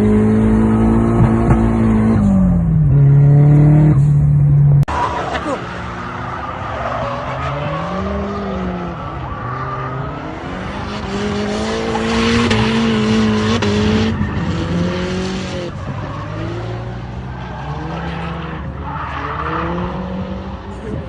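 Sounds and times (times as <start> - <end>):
turbocharged car engine revving: 5.1 - 21.0.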